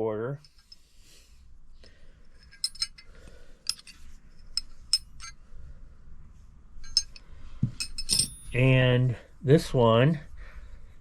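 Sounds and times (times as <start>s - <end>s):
metal wrenches clinking: 0.4s - 0.8s, 2.4s - 5.4s, 6.8s - 8.6s.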